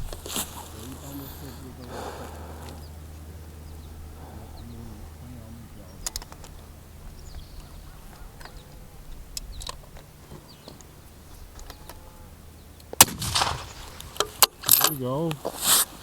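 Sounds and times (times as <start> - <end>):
faint birdsong: 0.0 - 16.0
sharp rifle shot with echo: 13.0 - 14.8.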